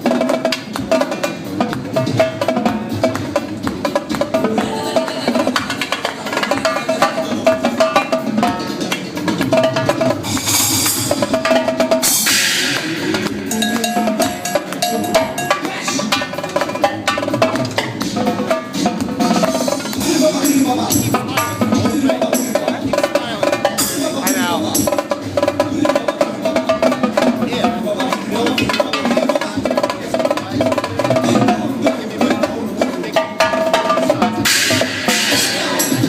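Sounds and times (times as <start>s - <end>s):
drum kit played live: 0.0s - 36.0s
electronic dance music: 4.4s - 7.0s, 20.1s - 25.0s, 27.4s - 27.9s.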